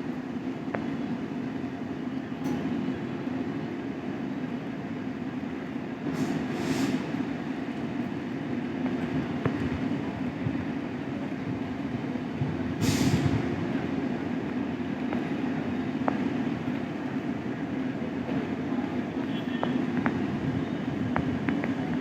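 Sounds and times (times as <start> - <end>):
train low rumble: 0.0 - 22.0
short hissing burst: 6.2 - 7.1, 12.8 - 13.3.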